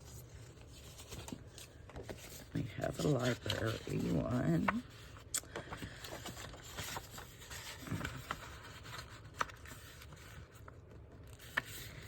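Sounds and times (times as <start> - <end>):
paper rustling: 0.0 - 12.0.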